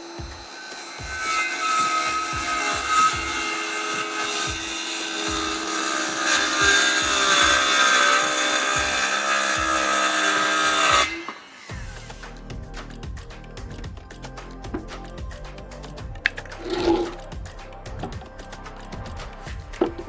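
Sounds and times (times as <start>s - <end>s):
power saw cutting wood: 0.0s - 12.4s.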